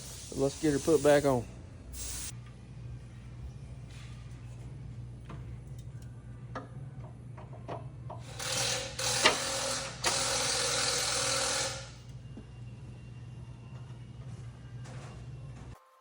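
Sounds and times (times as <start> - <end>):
steady low hum: 0.0 - 10.3
power tool whirring: 8.2 - 12.0.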